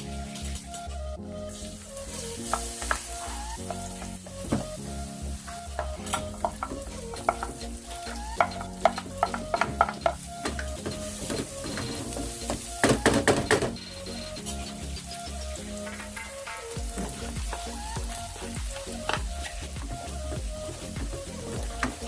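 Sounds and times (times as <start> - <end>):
shrimp sizzling in a pan: 1.5 - 4.2, 5.0 - 13.1, 14.4 - 22.0
utensil scraping a pan: 13.5 - 17.3.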